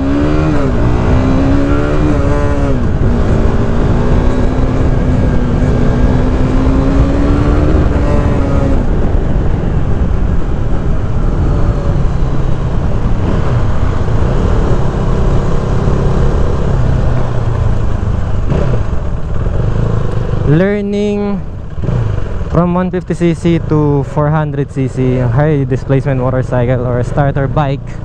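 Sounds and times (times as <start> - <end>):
wind rush: 0.0 - 20.5
motorcycle engine: 0.0 - 28.0.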